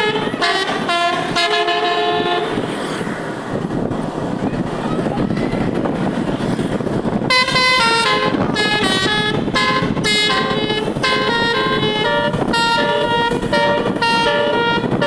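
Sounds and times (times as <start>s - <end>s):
bus musical air horn: 0.0s - 3.0s, 7.1s - 15.0s
road and engine rumble: 0.0s - 15.0s.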